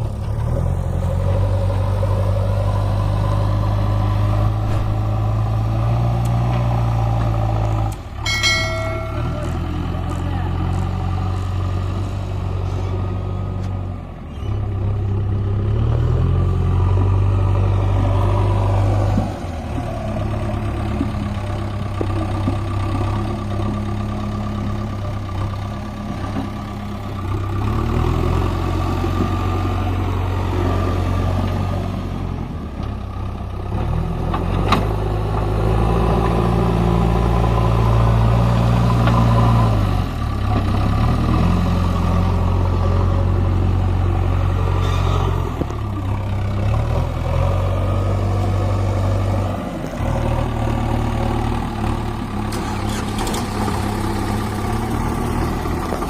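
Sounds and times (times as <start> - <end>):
diesel engine revving under load: 0.0 - 56.0.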